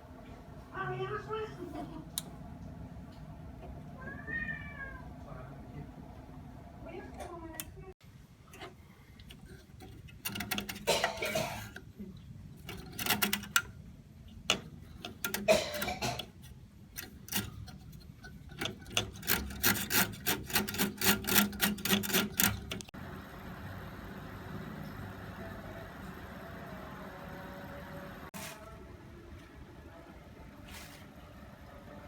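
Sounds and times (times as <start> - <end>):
clicks and scraping of hard objects: 8.5 - 13.7, 14.3 - 23.0.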